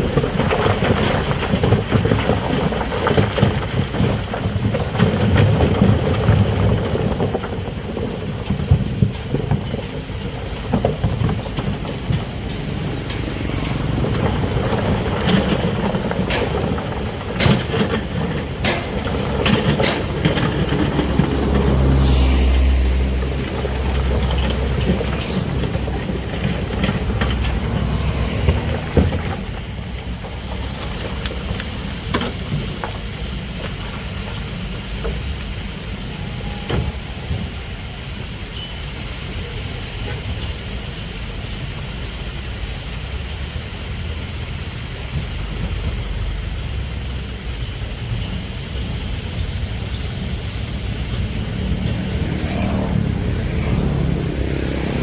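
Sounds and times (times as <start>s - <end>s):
metal knocks and clanks: 0.0s - 35.3s
diesel engine rumble: 0.0s - 55.0s.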